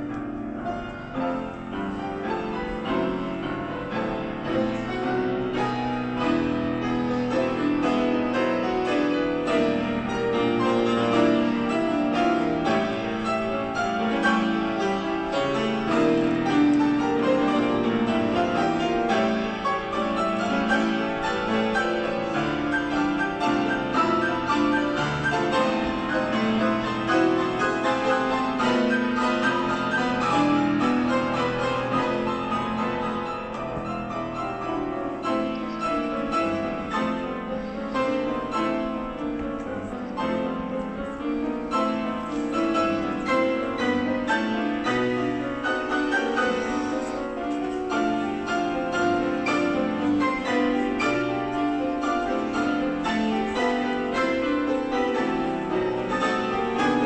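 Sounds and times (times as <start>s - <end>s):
piano music: 0.0s - 57.0s.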